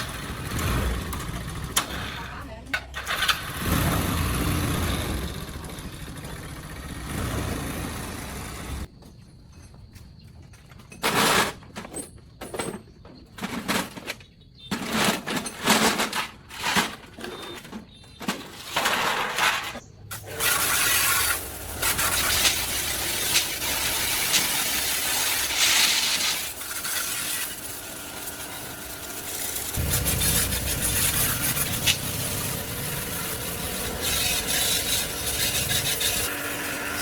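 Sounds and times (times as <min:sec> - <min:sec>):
rough rasping noise: 0:20.2 - 0:37.0.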